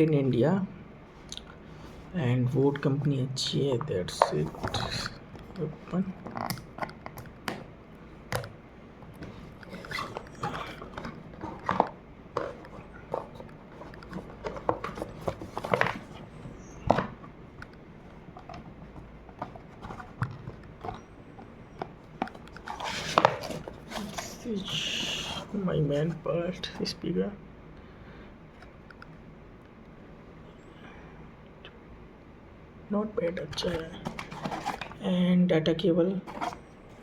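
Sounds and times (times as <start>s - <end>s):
cardboard packaging handled: 2.8s - 17.4s, 18.0s - 26.9s, 33.6s - 35.0s, 36.3s - 37.0s.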